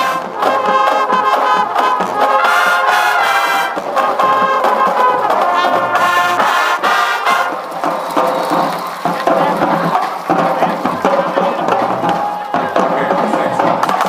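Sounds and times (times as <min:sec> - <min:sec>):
marching band brass hits: 0:00.0 - 0:14.0.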